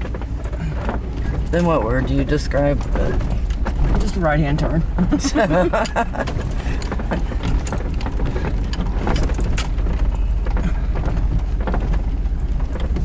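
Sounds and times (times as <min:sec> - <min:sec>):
vehicle engine and road rumble: 0:00.0 - 0:13.0
clicks and knocks from bumps: 0:05.8 - 0:13.0.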